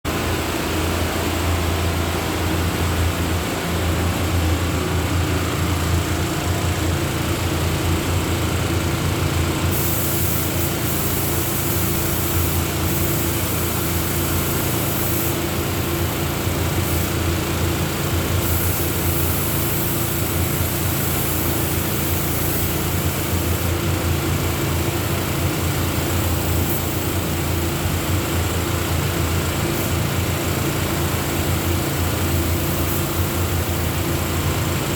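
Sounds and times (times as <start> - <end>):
paint sprayer motor humming: 2.2 - 34.9
hiss of spraying: 9.7 - 28.2, 29.6 - 30.3, 30.9 - 34.9.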